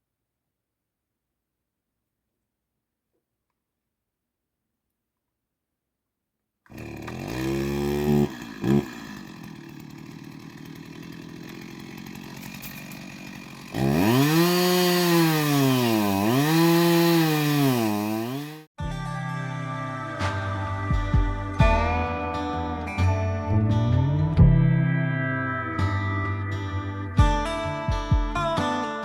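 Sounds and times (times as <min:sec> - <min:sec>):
chainsaw cutting through wood: 0:06.7 - 0:18.7
chainsaw revving and idling: 0:06.7 - 0:18.7.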